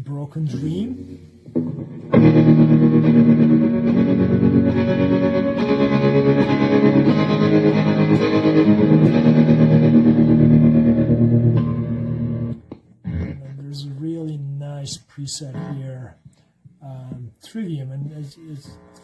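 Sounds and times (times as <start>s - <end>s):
distorted electric guitar chords: 0.9s - 13.4s.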